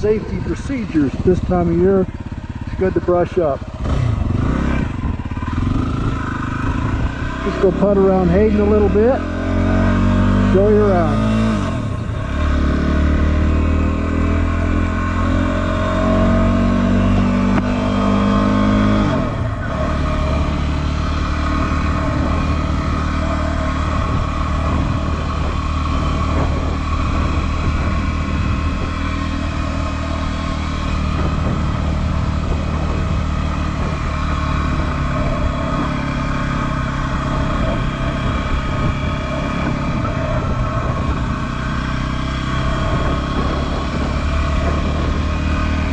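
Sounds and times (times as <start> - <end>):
motorcycle engine riding: 0.0 - 45.9.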